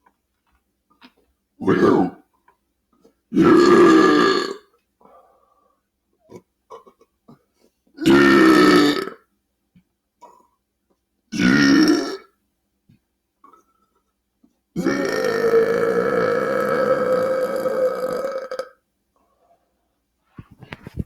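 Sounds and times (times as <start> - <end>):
man belching: 1.6 - 2.2, 3.4 - 4.6, 8.0 - 9.2, 11.4 - 12.3, 14.8 - 18.8.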